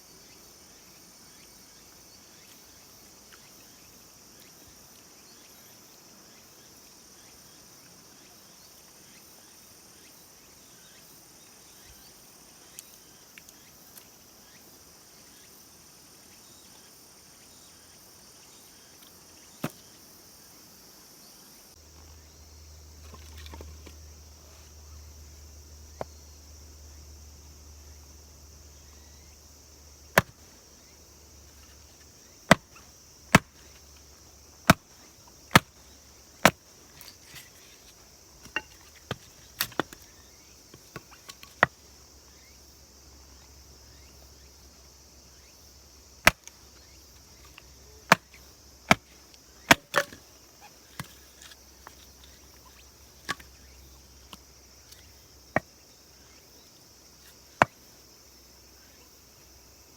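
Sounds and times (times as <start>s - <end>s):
sharp knocks: 30.2s - 30.4s.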